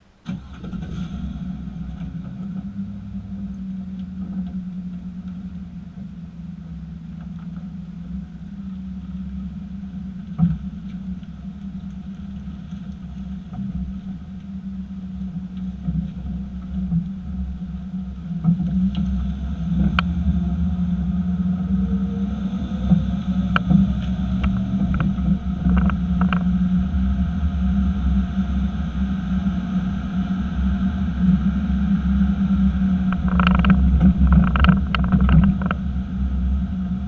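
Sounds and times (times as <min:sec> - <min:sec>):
pickup engine hum: 0:00.0 - 0:37.0.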